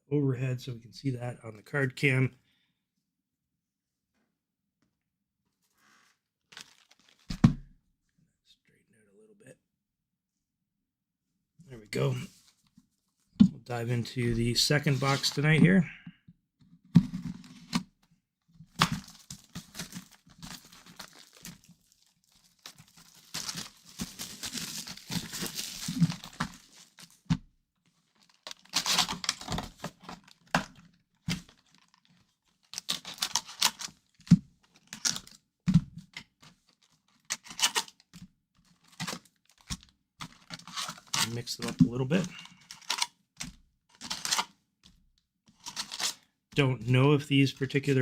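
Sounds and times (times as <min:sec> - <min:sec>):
plastic wrap tearing and crinkling: 0:06.5 - 0:07.3, 0:18.8 - 0:27.2, 0:28.1 - 0:30.6, 0:31.4 - 0:35.4, 0:44.0 - 0:44.5, 0:45.6 - 0:46.2.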